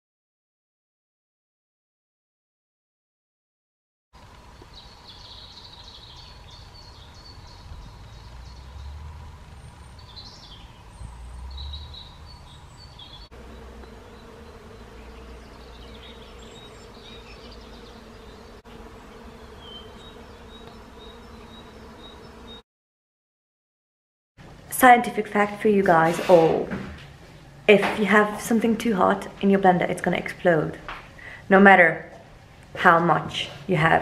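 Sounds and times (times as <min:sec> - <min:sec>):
low wind rumble: 0:04.2 - 0:17.8
insect-like buzz: 0:04.2 - 0:22.6
small birds chirping: 0:04.3 - 0:22.6.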